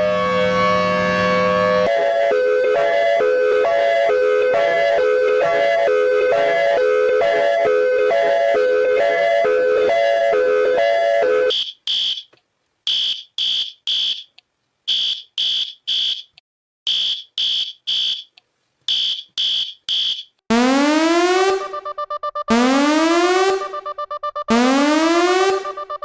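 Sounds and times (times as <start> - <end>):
smoke alarm beeping: 11.5 - 12.3, 12.9 - 14.3, 14.9 - 26.0.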